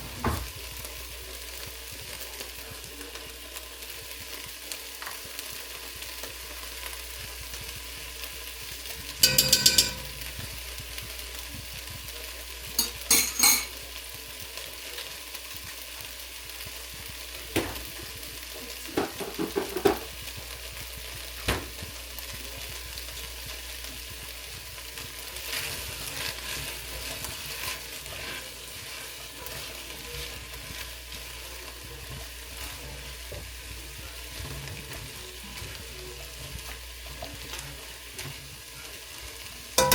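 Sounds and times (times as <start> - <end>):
food sizzling in a pot: 0.0 - 39.9
utensil clanking against pot: 9.2 - 10.4, 12.8 - 13.8.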